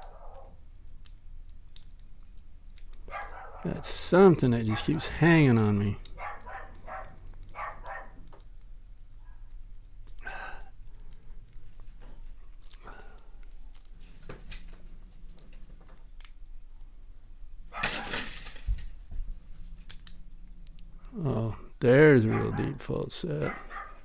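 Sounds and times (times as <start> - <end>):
lock picks clicking and scraping: 12.6 - 16.4
metal clatter: 17.7 - 19.0.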